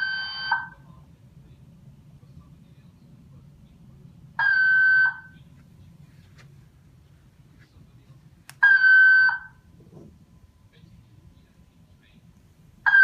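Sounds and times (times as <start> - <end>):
fire alarm high tone: 0.0 - 0.8
faint low hum: 0.0 - 13.0.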